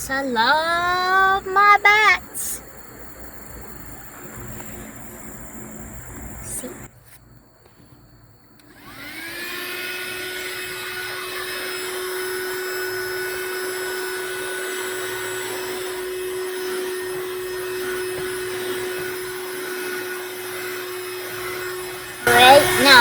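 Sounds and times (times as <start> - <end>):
vacuum motor whine: 0.0 - 23.0.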